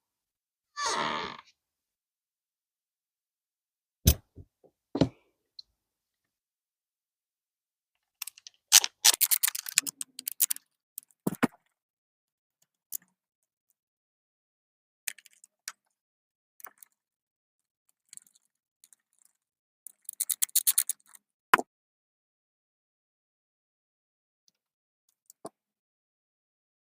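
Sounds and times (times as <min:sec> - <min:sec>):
door lock parts clicking: 0:08.2 - 0:10.6.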